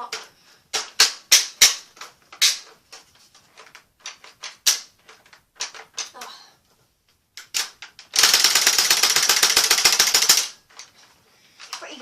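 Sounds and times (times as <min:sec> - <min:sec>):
toy blaster clicking and clacking: 0:00.0 - 0:02.8, 0:03.6 - 0:06.2, 0:07.4 - 0:10.9.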